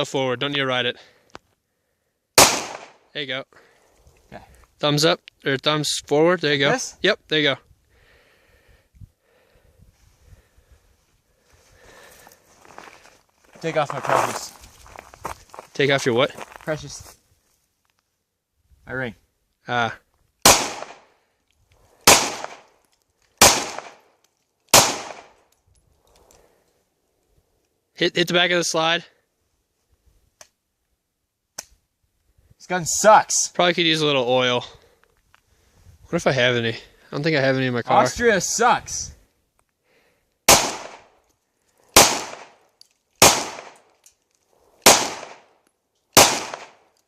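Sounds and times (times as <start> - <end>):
pistol shots: 2.4 - 3.0, 20.4 - 21.1, 22.0 - 22.7, 23.4 - 24.0, 24.7 - 25.4, 40.5 - 41.1, 42.0 - 42.6, 43.2 - 43.8, 44.8 - 45.5, 46.2 - 46.8.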